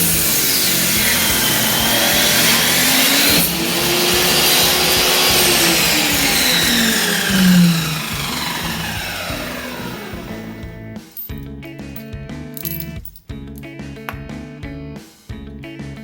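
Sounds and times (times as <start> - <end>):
power tool motor running: 0.0 - 10.8.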